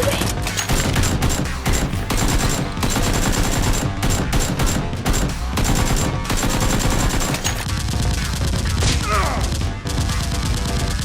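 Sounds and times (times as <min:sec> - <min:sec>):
automatic gunfire: 0:00.6 - 0:07.7.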